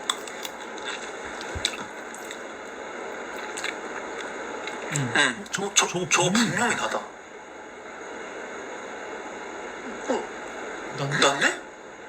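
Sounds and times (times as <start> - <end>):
wet mouth eating sounds: 0.0 - 5.6.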